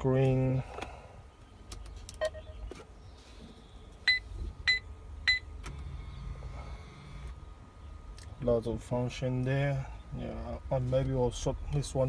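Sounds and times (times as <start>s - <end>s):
short electronic beeps: 2.2s - 2.7s.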